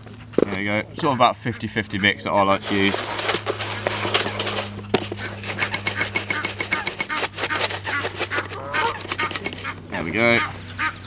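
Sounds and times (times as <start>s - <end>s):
pellets rattling in bucket: 2.6s - 9.8s.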